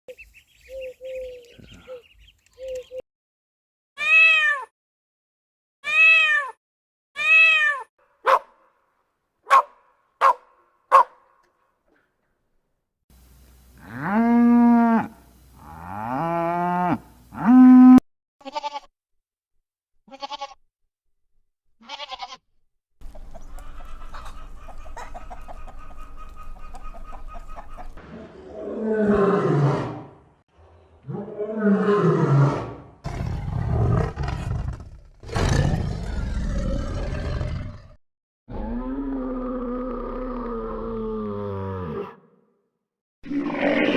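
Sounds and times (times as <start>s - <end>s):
goat bleating: 18.4s - 18.9s, 20.1s - 20.6s, 21.8s - 22.4s
big cat roaring: 28.1s - 30.2s, 31.0s - 42.2s, 43.3s - 43.9s.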